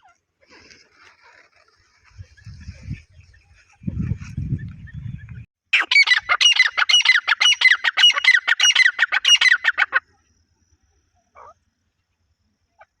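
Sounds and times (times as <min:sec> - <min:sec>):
francolin calling: 0:05.8 - 0:10.0.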